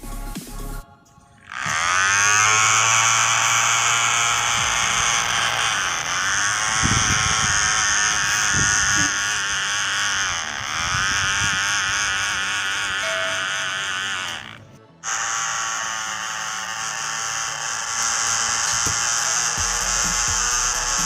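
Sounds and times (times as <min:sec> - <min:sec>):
small electric motor buzzing: 0:01.4 - 0:21.0.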